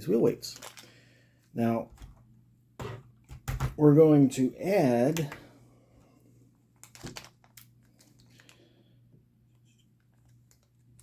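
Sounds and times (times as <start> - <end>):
low electrical hum: 0.0 - 11.0
plastic package crinkling: 0.5 - 0.9, 6.8 - 8.6.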